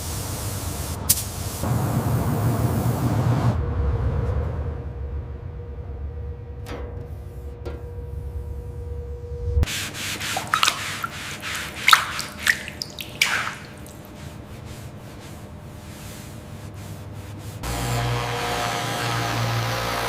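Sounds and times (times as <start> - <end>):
low steady hum: 3.6 - 17.7
rough rubbing strokes: 9.6 - 17.7.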